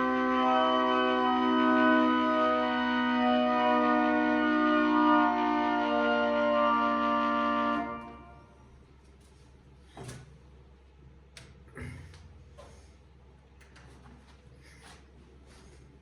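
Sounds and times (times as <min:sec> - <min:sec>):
tornado sirens sounding together: 0:00.0 - 0:08.6.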